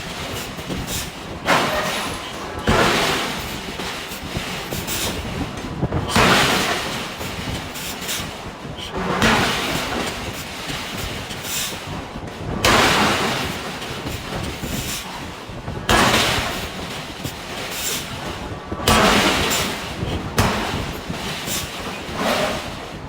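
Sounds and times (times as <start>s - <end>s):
forging hammer striking steel: 0.0s - 5.4s, 6.1s - 8.3s, 15.9s - 18.2s, 18.8s - 22.8s
machinery rumble: 0.0s - 23.0s.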